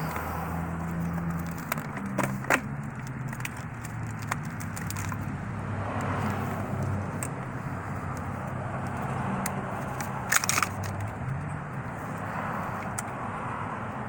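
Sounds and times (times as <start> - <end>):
vehicle noise: 0.0 - 14.0.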